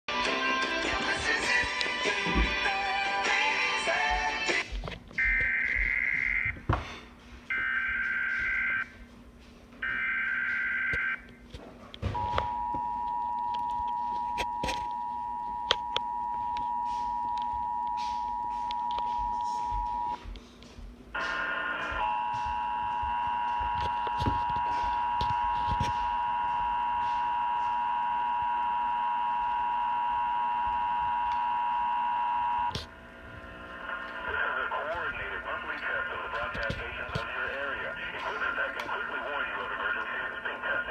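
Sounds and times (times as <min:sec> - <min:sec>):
static clicks: 0:33.8 - 0:40.6.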